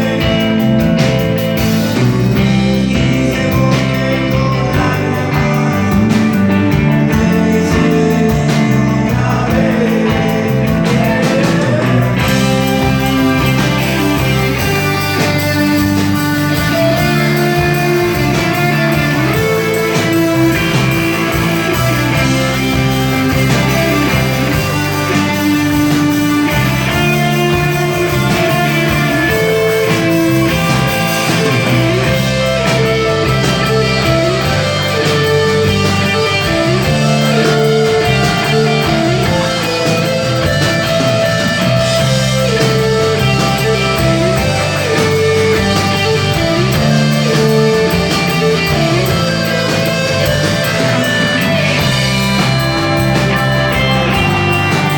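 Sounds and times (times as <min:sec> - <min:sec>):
electric guitars: 0:00.0 - 0:54.9
rock band playing live: 0:00.0 - 0:54.9.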